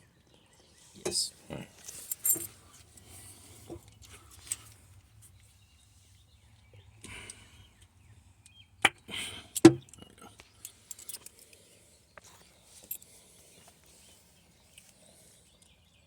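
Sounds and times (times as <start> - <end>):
small parts and tools clicking: 1.8 - 3.1, 9.6 - 11.6.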